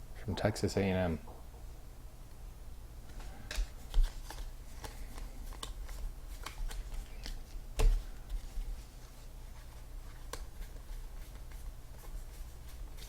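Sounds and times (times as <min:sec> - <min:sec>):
cards clicking and flicking: 0:03.4 - 0:08.0.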